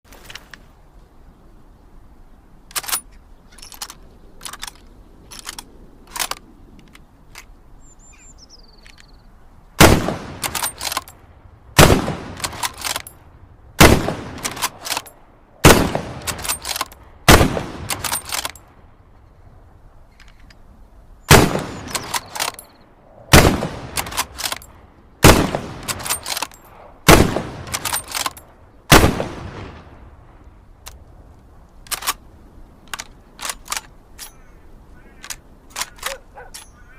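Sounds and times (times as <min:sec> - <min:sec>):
rifle bolt clicking: 0:02.7 - 0:07.5, 0:17.8 - 0:18.6, 0:23.9 - 0:24.7
rifle shots: 0:09.8 - 0:11.1, 0:11.8 - 0:13.1, 0:13.8 - 0:18.6, 0:21.3 - 0:22.6, 0:23.3 - 0:29.9
light metallic clicks: 0:32.8 - 0:34.5, 0:35.1 - 0:36.9.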